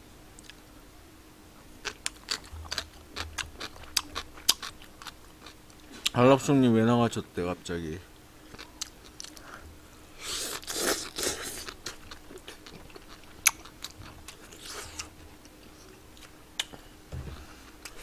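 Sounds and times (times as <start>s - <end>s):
chewing and crunching food: 1.6s - 6.2s, 8.4s - 9.6s, 10.2s - 16.9s.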